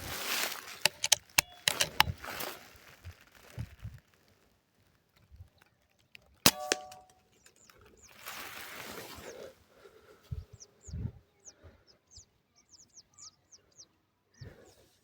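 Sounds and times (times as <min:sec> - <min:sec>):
sharp metallic clicks: 0:00.8 - 0:02.2, 0:06.4 - 0:07.6
air rifle shot: 0:06.5 - 0:07.1.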